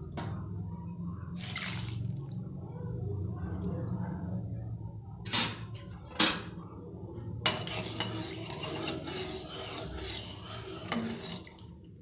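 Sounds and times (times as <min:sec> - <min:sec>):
metal stirring and scraping: 0:07.4 - 0:12.0.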